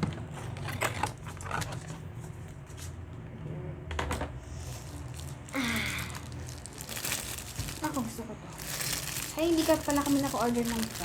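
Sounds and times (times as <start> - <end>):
packaging rustle: 4.6 - 11.0.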